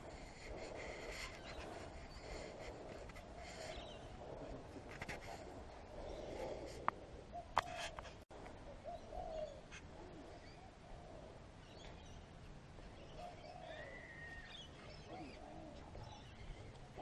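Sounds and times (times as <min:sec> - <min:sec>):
faint bird calls: 0:00.0 - 0:17.0.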